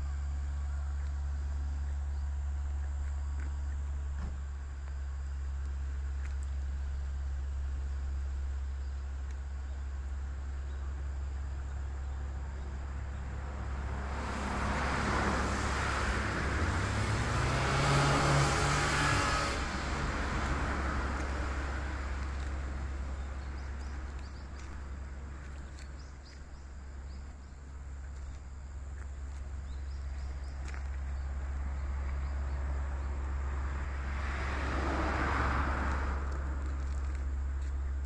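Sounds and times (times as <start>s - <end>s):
steady low hum: 0.0s - 17.0s
motor vehicle passing: 12.8s - 38.0s.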